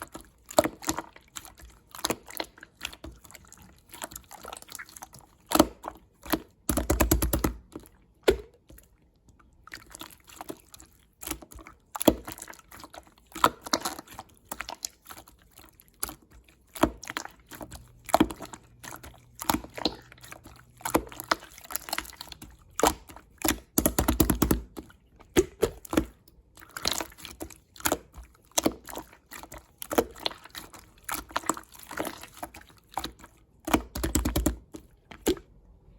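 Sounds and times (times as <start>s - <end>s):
slime squelching by hand: 0.0s - 35.9s.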